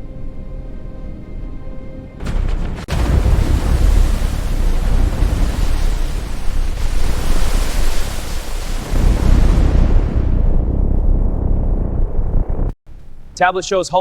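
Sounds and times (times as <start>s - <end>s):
sea surf rushing: 2.2s - 10.6s
deep rumble: 2.2s - 13.4s.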